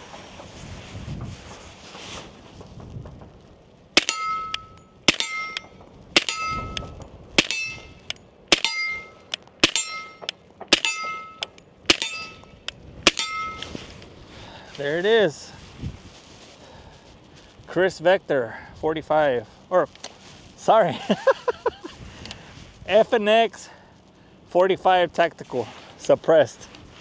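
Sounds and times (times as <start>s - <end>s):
suppressed pistol shots: 4.0s - 14.0s
short metallic ring: 4.0s - 14.1s.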